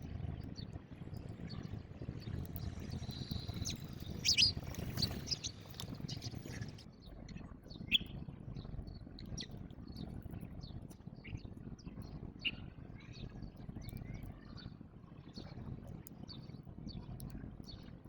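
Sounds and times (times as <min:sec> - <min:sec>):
low background rumble: 0:00.0 - 0:18.0
sparrows chirping: 0:01.4 - 0:06.8, 0:07.8 - 0:08.1.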